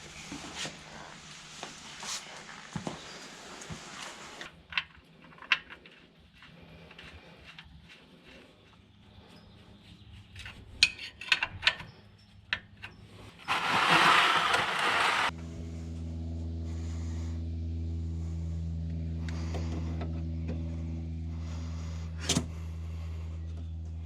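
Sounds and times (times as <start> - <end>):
car engine running steadily: 13.5 - 24.0.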